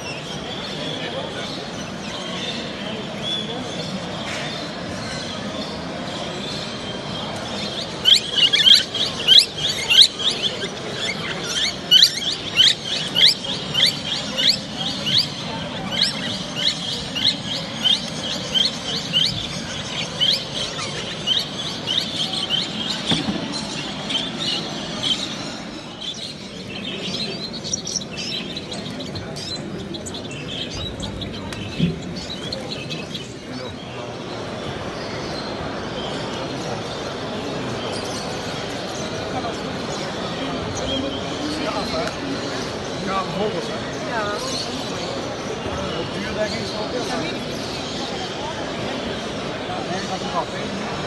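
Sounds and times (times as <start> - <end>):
bird chirping: 6.2 - 33.8.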